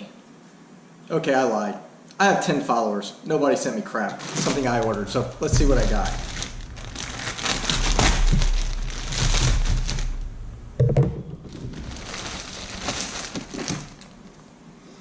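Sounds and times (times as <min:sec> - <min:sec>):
packaging crinkling: 0:04.2 - 0:14.6
thump: 0:04.4 - 0:14.2.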